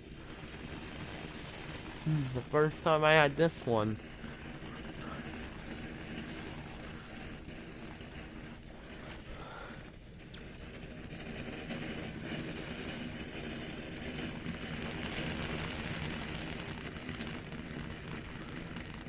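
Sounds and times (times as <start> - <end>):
firework fountain hissing: 0.0 - 19.0
low steady hum: 1.9 - 7.2.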